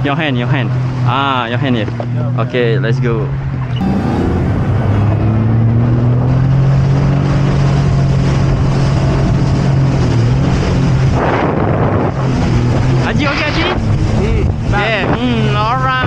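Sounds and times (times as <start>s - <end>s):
jet ski engine running: 3.8s - 5.9s.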